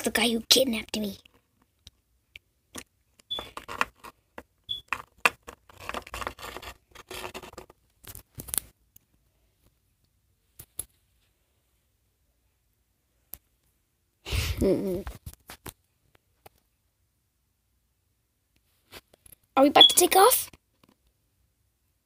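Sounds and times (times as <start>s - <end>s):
small hard objects clicking and rustling: 2.7s - 8.7s.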